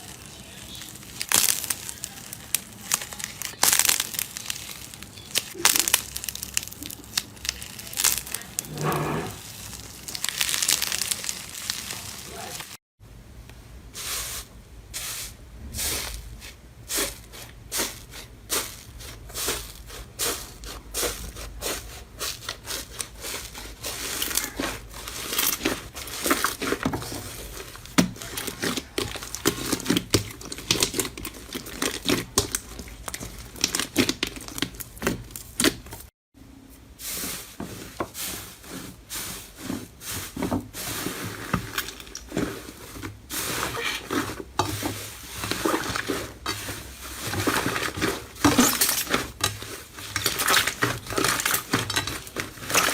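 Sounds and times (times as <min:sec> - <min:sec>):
slime crackling and popping: 0:00.0 - 0:12.8, 0:22.6 - 0:36.1.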